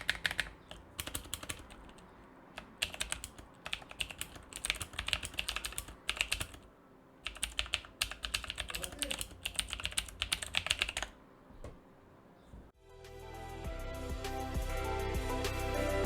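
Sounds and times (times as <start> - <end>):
mechanical keyboard typing: 0.0 - 11.2
music: 12.8 - 16.0.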